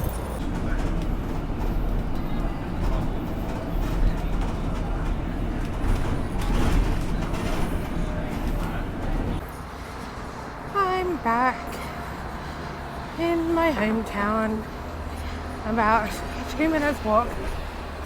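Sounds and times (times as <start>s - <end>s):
faint voices: 0.0s - 9.4s
low rumble of moving vehicle: 0.0s - 18.0s.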